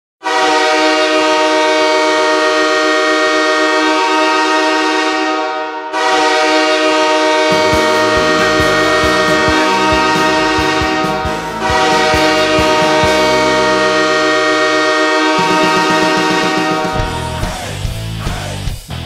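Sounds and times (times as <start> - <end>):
goal horn multi-note chord: 0.2 - 18.1
goal music: 7.4 - 18.4.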